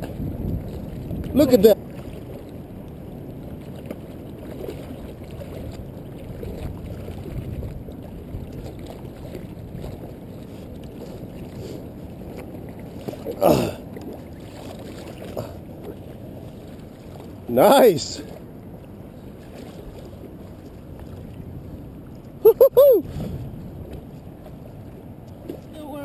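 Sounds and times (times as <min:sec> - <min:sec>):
wind on microphone: 0:00.0 - 0:16.7, 0:19.6 - 0:26.0
rushing water: 0:00.0 - 0:26.0.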